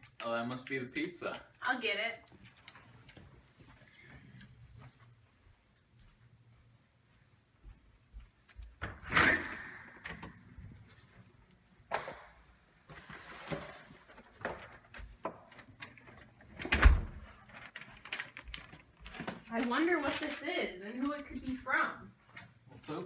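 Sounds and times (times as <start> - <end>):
door opening and shutting: 8.8 - 10.9, 15.8 - 17.4.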